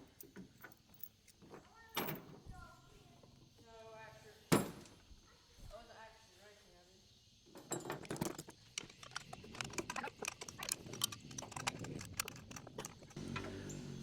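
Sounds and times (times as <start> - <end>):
wrench clicking and clinking: 7.8 - 13.8.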